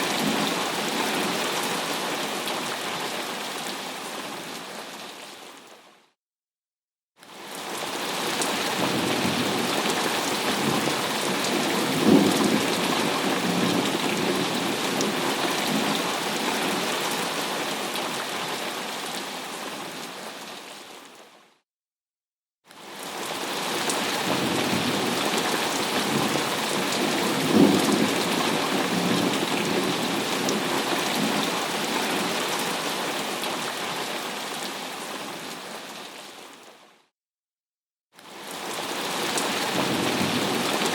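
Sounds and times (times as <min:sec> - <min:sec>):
heavy rain: 0:00.0 - 0:05.8, 0:07.3 - 0:21.3, 0:22.8 - 0:36.7, 0:38.3 - 0:40.9
low rolling thunder: 0:11.5 - 0:14.5.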